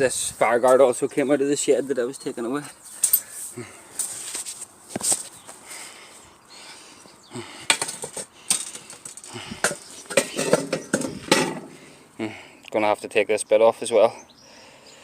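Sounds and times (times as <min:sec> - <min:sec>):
metal parts clinking and scraping: 0:07.7 - 0:11.8.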